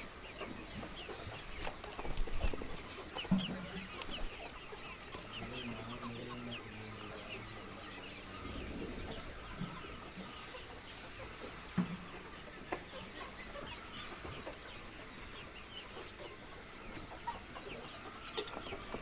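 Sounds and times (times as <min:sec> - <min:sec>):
hens clucking: 0:00.0 - 0:19.0.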